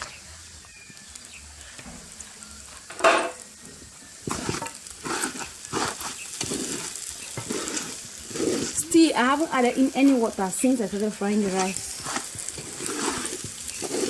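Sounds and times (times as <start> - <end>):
rice sizzling in a pot: 0.0 - 14.0
spoon scraping a pot: 4.2 - 8.9, 11.4 - 14.0.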